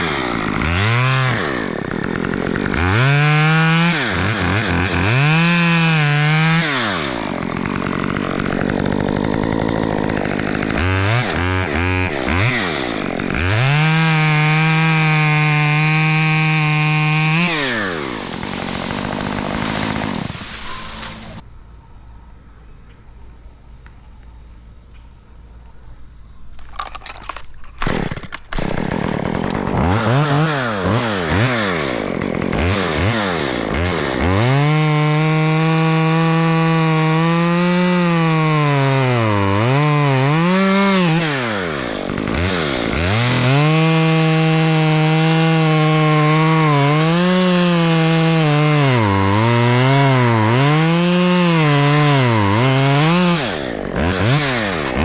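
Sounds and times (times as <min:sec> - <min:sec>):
chainsaw engine revving: 0:00.0 - 0:21.5, 0:27.8 - 0:55.0.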